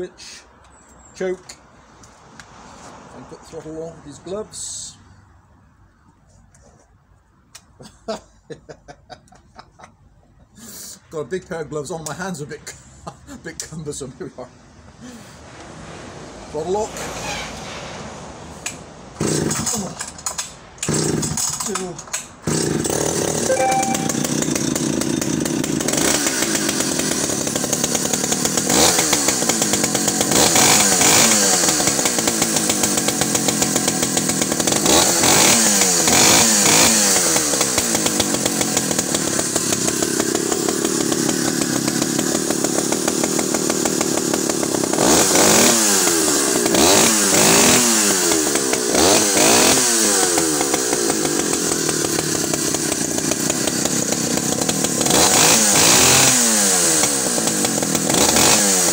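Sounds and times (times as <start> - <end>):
chainsaw engine revving: 18.7 - 58.9.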